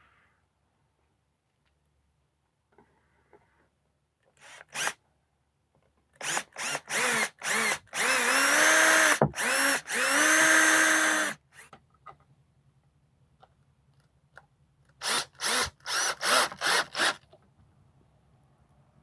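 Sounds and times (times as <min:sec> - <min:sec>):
power drill motor whining: 0:04.4 - 0:05.0, 0:06.2 - 0:11.7, 0:15.0 - 0:17.2.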